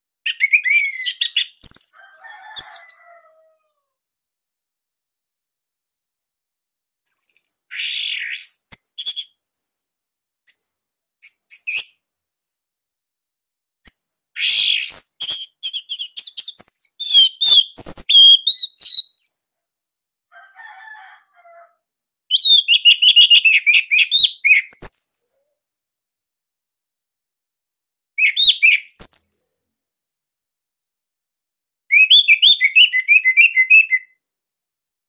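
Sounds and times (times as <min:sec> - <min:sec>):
thrush singing whistles: 0:00.3 - 0:01.8, 0:14.4 - 0:19.3, 0:22.3 - 0:25.1, 0:28.2 - 0:29.4, 0:31.9 - 0:34.0.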